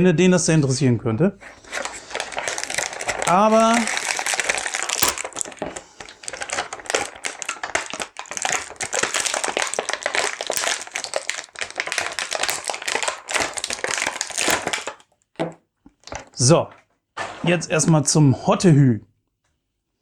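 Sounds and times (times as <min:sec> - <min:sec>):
plastic packaging crackling: 0:01.4 - 0:16.4.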